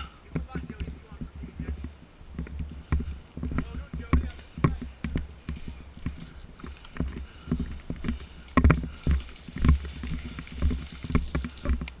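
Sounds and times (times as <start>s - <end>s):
microphone handling thuds: 0.0s - 11.9s.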